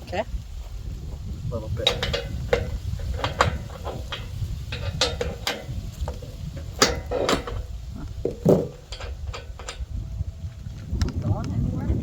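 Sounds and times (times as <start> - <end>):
metal clinks and knocks: 1.7 - 10.2.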